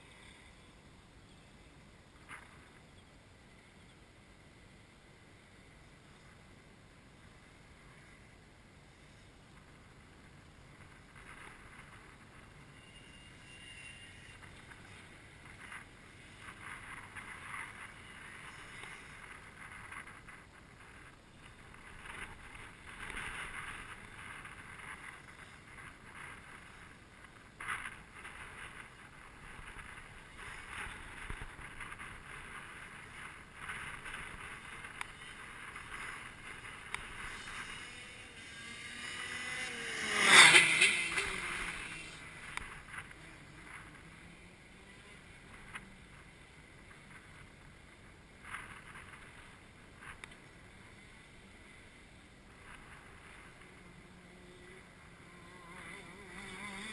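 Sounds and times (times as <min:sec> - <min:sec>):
distant kart engines buzzing: 0:10.7 - 0:47.6, 0:48.4 - 0:56.9
wind on microphone: 0:14.2 - 0:50.7.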